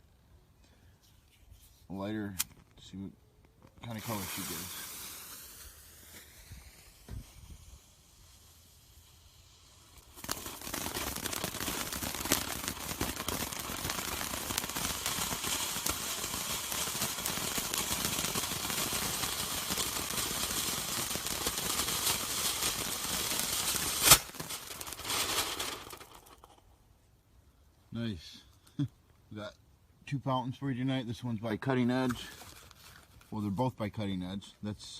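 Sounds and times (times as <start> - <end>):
firework fountain hissing crackle: 3.7 - 26.6.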